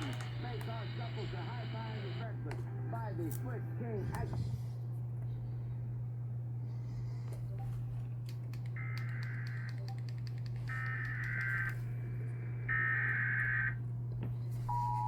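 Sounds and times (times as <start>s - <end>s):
scattered clicks: 0.0s - 0.8s, 8.2s - 11.9s
steady low hum: 0.0s - 15.0s
two-tone attention signal: 14.7s - 15.0s.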